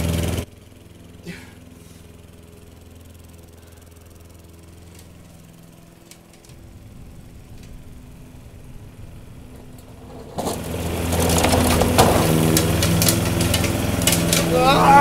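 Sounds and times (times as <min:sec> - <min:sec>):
lawn mower engine running: 0:00.0 - 0:15.0
rough clattering noise: 0:06.0 - 0:14.8.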